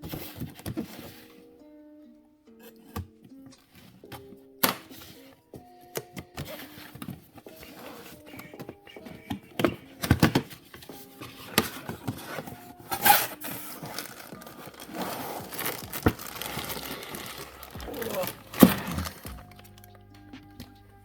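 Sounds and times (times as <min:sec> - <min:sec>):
knocks and clicks of box: 0:02.7 - 0:13.3
plastic wrapping crinkling and tearing: 0:09.9 - 0:20.0.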